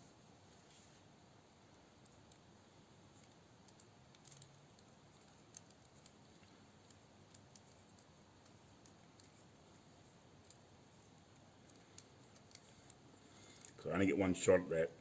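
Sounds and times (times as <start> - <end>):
small metal parts clicking: 3.1 - 9.5, 11.6 - 13.8.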